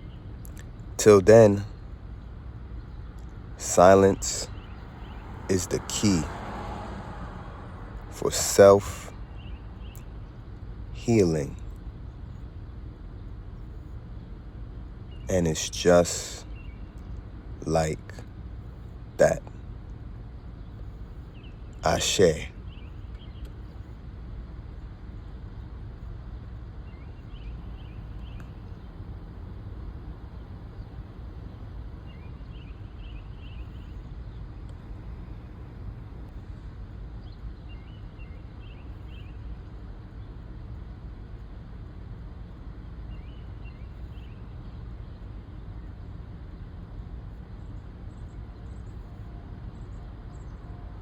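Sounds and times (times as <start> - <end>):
low outdoor rumble: 0.0 - 51.0.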